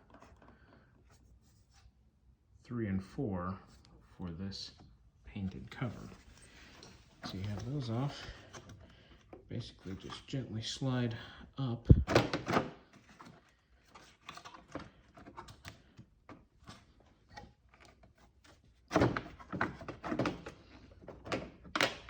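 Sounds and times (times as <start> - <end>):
light plastic clicks and scrapes: 0.0 - 1.8, 4.7 - 10.4, 12.9 - 22.0.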